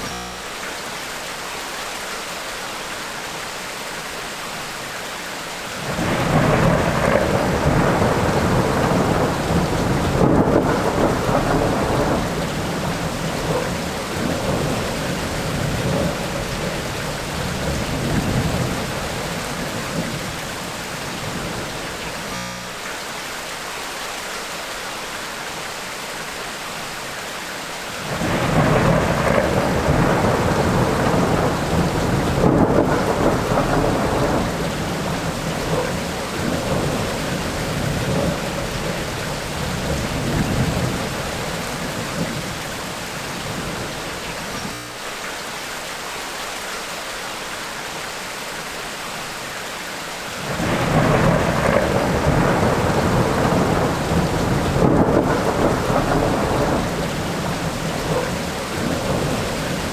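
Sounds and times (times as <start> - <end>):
steady rain: 0.0 - 59.9
rolling thunder: 5.8 - 22.4, 28.0 - 44.7, 50.4 - 59.9.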